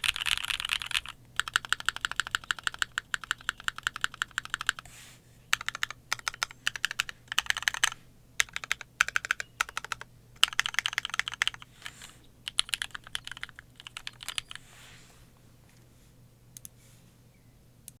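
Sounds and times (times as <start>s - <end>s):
typing on mechanical keyboard: 0.0s - 4.8s, 5.5s - 11.7s, 12.5s - 14.6s.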